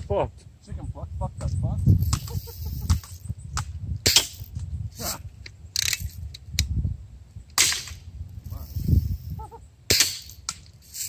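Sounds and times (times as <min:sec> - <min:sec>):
air gun shots cracking: 0:04.0 - 0:04.4, 0:07.6 - 0:08.0, 0:09.9 - 0:11.0.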